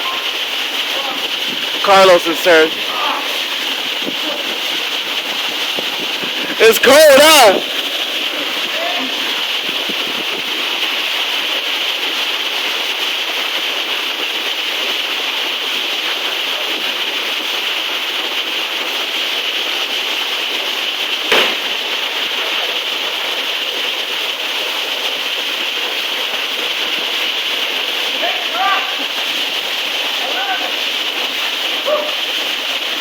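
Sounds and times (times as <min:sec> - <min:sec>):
waterfall pouring into pool: 0:00.0 - 0:33.0
sharp knock: 0:21.3 - 0:21.7.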